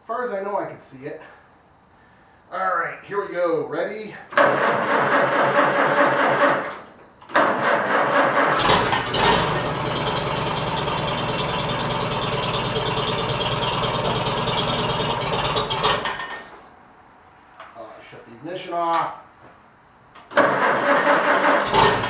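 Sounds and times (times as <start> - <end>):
starter motor cranking: 4.4 - 11.9, 20.3 - 22.0
engine running: 4.4 - 16.7, 20.3 - 22.0.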